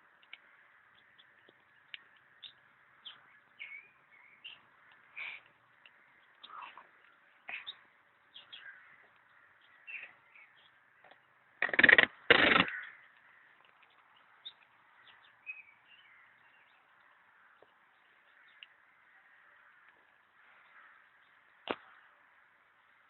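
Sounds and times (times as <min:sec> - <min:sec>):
faint bird chirps: 0:00.3 - 0:12.0.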